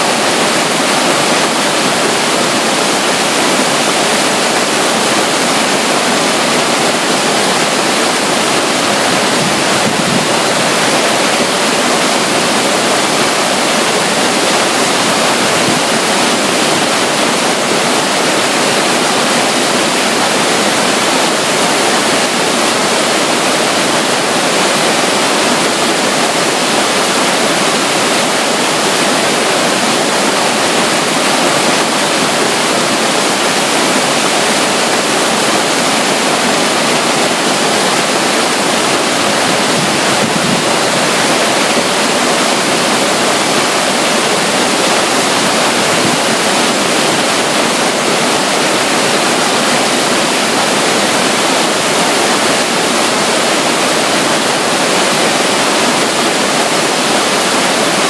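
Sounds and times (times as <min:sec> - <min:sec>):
running water rushing: 0:00.0 - 0:58.0.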